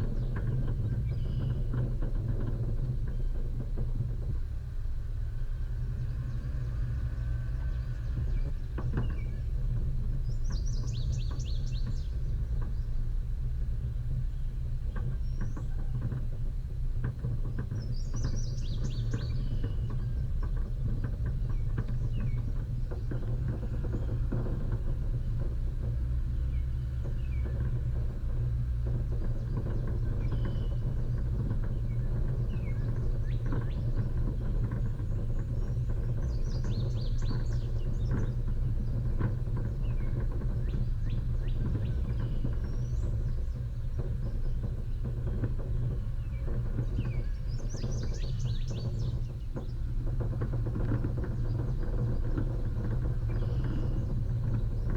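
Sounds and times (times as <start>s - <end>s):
vehicle engine and road rumble: 0.0s - 54.9s
vehicle knocks and rattles: 0.0s - 54.9s
birds chirping: 46.2s - 49.9s.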